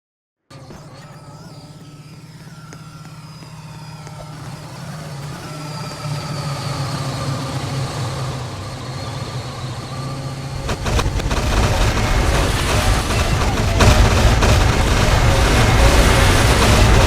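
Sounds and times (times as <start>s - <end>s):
high squealing tones: 0.5s - 17.0s
freight train rumbling: 5.1s - 17.0s
crashing noise: 10.6s - 17.0s.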